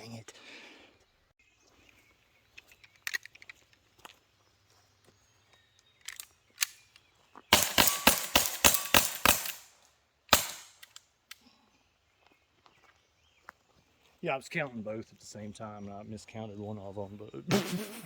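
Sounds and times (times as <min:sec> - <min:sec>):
air pistol shots: 0:07.5 - 0:09.7, 0:10.3 - 0:11.0
air pistol clicks: 0:07.6 - 0:09.7, 0:10.3 - 0:11.0.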